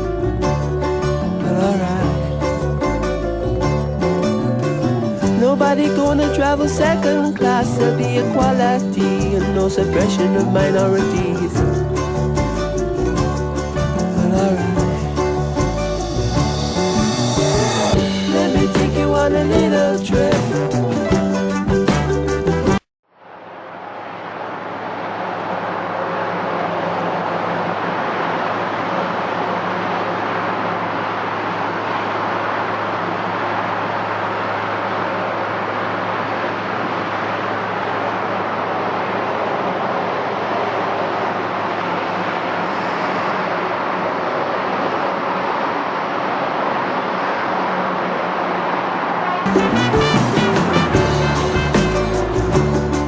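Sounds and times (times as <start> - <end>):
jet engine rushing: 23.3 - 52.8.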